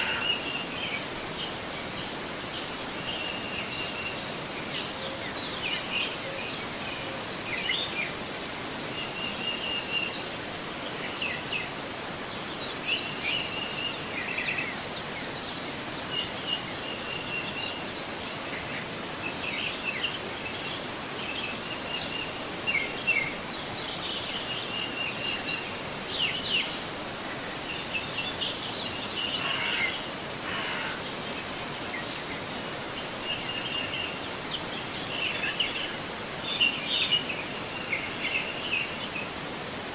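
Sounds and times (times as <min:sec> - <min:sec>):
river flowing: 0:00.0 - 0:39.9
small birds chirping: 0:12.4 - 0:39.4.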